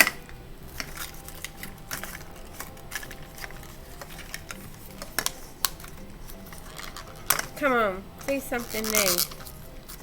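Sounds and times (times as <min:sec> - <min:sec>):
plastic clicks and crinkles: 0:08.2 - 0:10.0.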